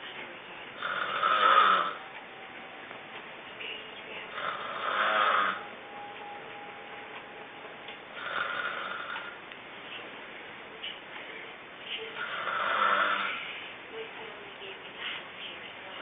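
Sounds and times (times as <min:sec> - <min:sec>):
person snoring: 0:00.8 - 0:02.0, 0:04.3 - 0:05.6, 0:08.1 - 0:09.4, 0:12.2 - 0:13.7.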